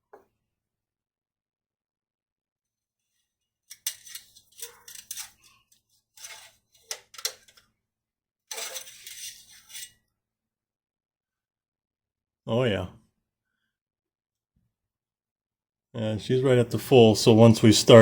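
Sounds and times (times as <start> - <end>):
metal dipstick clicking and scraping: 3.7 - 7.6, 8.5 - 9.9.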